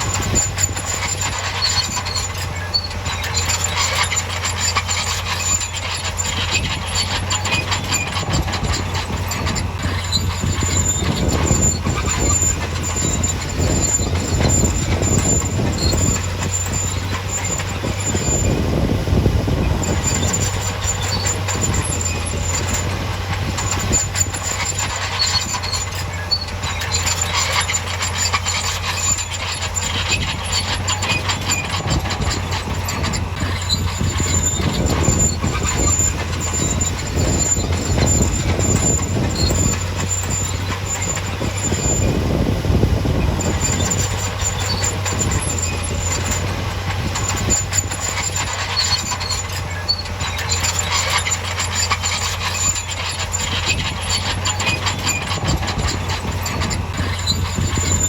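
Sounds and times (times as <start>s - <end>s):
bulldozer diesel engine running: 0.0s - 58.0s
crawler tracks clattering and squeaking: 0.0s - 58.0s
thin high squeal: 0.0s - 58.0s.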